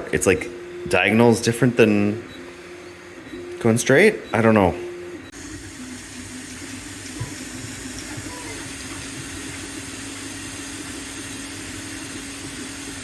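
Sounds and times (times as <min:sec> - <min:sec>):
machine hum: 0:00.0 - 0:13.0
fan hiss: 0:05.3 - 0:13.0.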